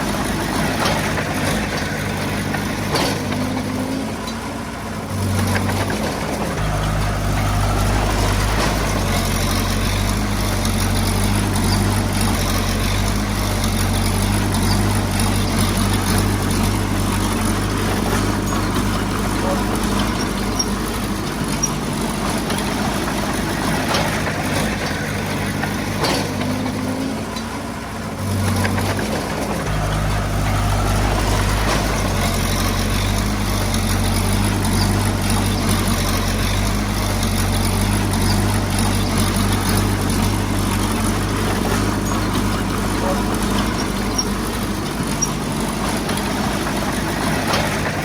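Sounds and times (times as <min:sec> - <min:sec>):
diesel engine running: 0:00.0 - 0:48.0.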